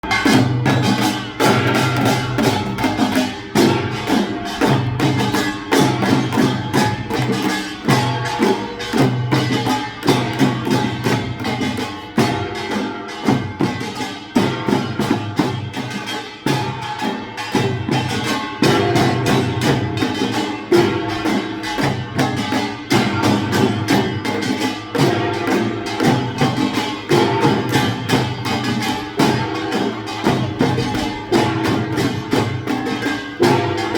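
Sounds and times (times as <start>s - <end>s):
fast driving drumming: 0.0s - 12.6s, 22.0s - 33.9s.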